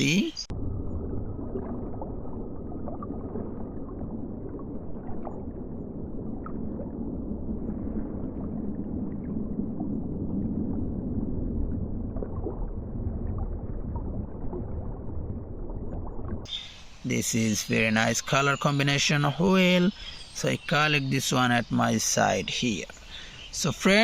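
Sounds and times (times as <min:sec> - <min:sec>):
water sloshing and gurgling: 0:00.0 - 0:17.0.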